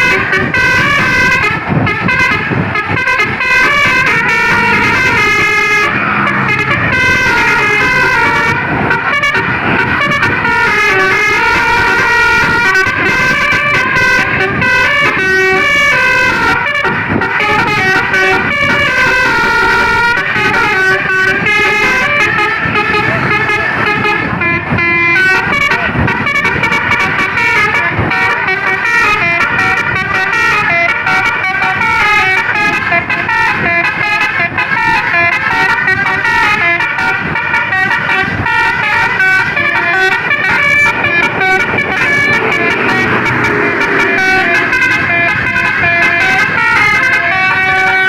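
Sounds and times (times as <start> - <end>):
musical air horn playing tune: 0.0 - 48.0
low rumble: 3.7 - 10.7, 39.5 - 45.6.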